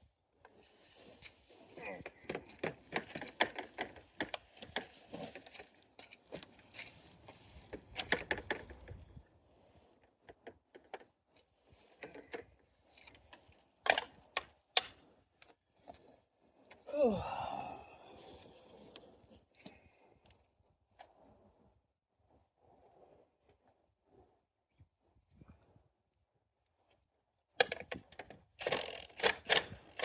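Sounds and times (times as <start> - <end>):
hand tools clicking and rattling: 2.0 - 7.0.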